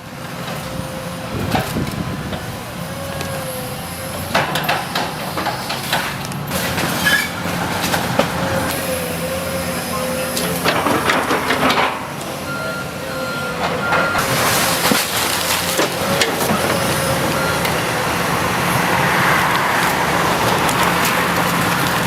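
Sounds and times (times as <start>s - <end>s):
diesel engine under load: 0.0s - 22.0s
reversing alarm beeps: 12.4s - 14.3s, 17.3s - 17.8s
wood and debris crashing: 13.9s - 17.8s.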